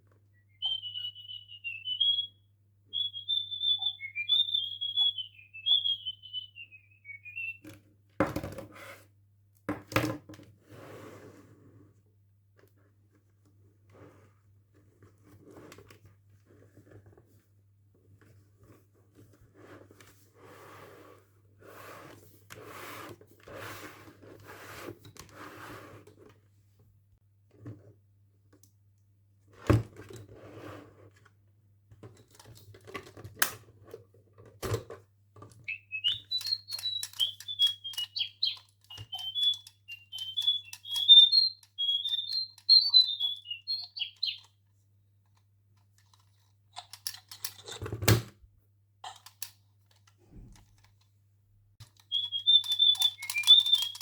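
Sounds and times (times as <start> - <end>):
electronic toy bird chirping: 0.4 - 7.6, 35.7 - 44.5, 52.0 - 54.0
clicks: 35.7 - 44.5, 51.8 - 54.0.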